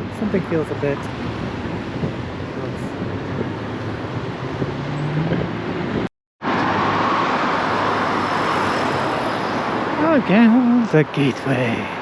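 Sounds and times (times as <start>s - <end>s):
road traffic noise: 0.0s - 12.0s.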